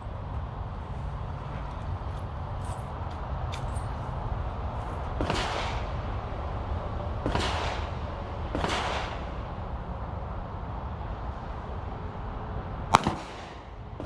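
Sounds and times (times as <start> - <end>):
pistol shots with echo: 5.2 - 6.0, 7.3 - 9.4, 12.9 - 13.8.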